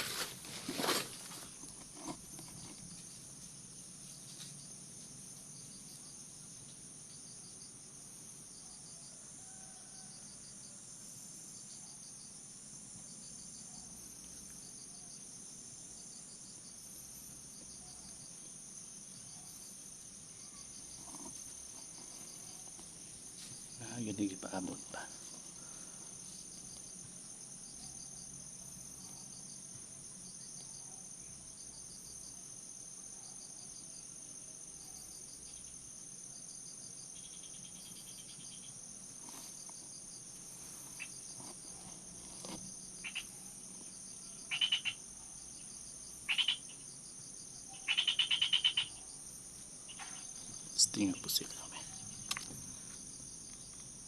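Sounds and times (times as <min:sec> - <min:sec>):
insects and crickets singing: 0:00.0 - 0:54.0
frog calling in pulsed trills: 0:44.5 - 0:45.0, 0:47.8 - 0:48.9.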